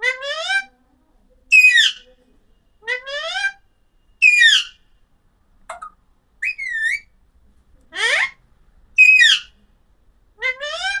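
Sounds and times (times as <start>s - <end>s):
parrot whistled calls: 1.5s - 2.0s, 4.2s - 4.8s, 5.7s - 7.1s, 9.0s - 9.5s.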